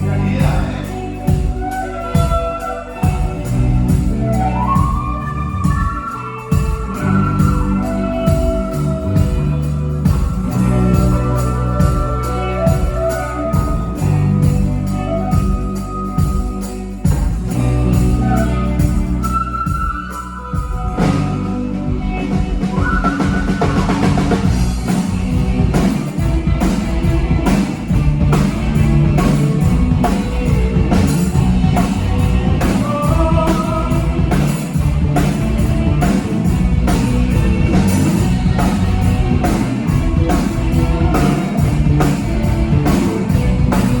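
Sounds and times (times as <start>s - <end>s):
drum kit beat: 0.0s - 44.0s
rock band playing: 0.0s - 44.0s.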